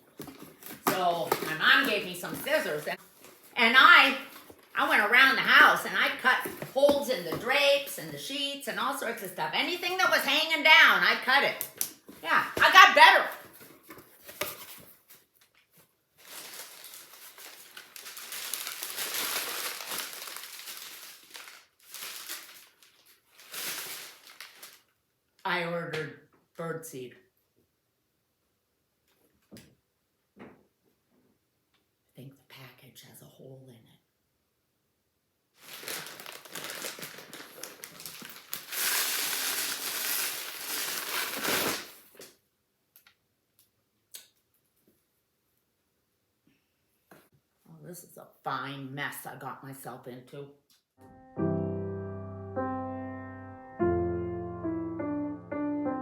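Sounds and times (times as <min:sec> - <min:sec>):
packaging rustling and crinkling: 0:00.0 - 0:08.2, 0:11.8 - 0:25.0, 0:35.6 - 0:42.4.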